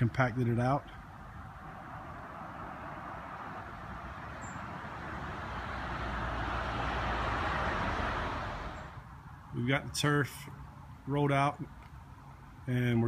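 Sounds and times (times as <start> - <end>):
vehicle passing by: 1.2 - 9.2.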